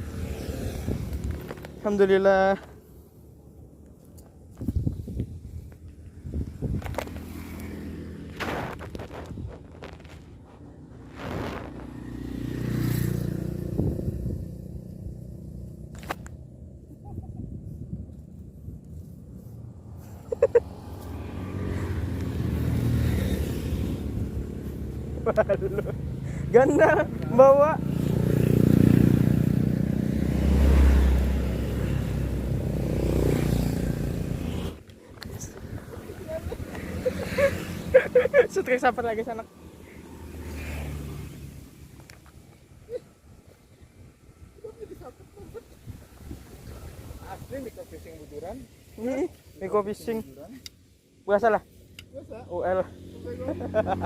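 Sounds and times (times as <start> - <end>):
motor engine passing by: 0.0 - 2.4, 6.5 - 16.0, 20.0 - 47.7, 52.2 - 54.0
rustling and scraping: 6.7 - 12.0.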